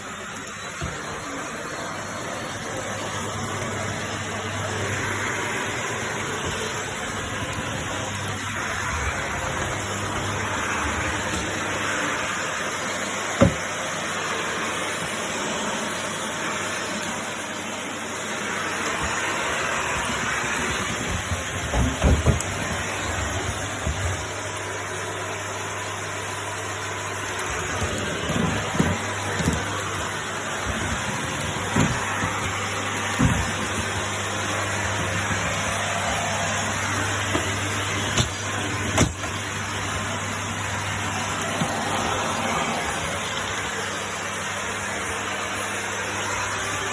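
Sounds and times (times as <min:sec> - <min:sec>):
vacuum cleaner running: 0:00.0 - 0:46.9.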